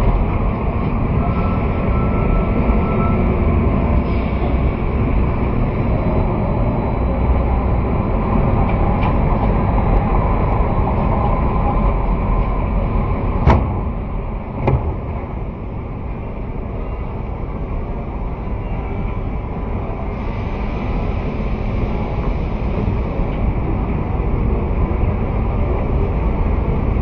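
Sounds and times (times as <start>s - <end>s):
low rumbling background noise: 0.0s - 27.0s
sharp knocks: 13.4s - 15.5s.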